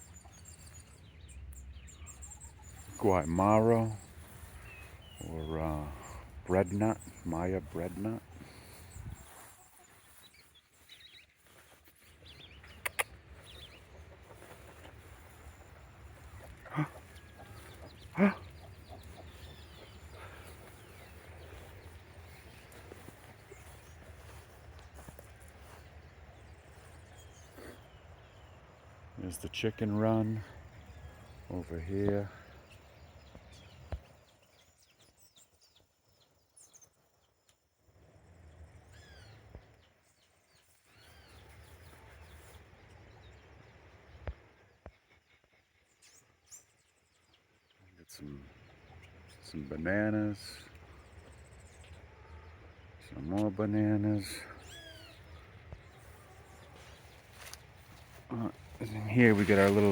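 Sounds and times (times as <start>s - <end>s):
birds chirping: 0.0s - 59.9s
chickens clucking: 12.4s - 25.9s.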